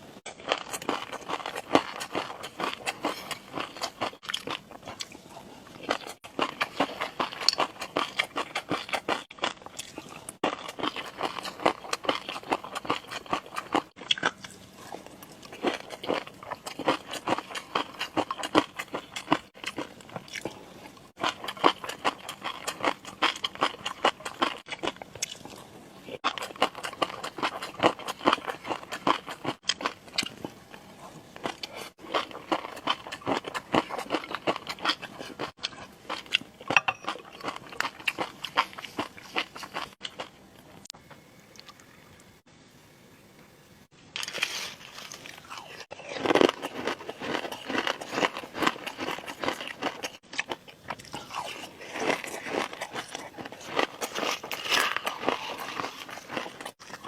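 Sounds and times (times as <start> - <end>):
chewing and crunching: 0.2 - 42.0, 44.2 - 57.0.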